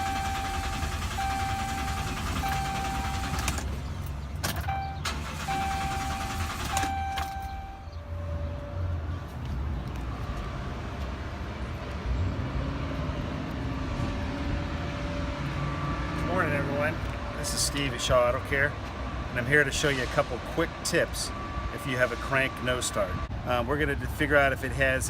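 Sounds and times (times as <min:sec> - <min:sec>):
short beep-like tones: 0:00.0 - 0:03.5, 0:04.6 - 0:08.0
vehicle engine rumbling: 0:00.0 - 0:25.0.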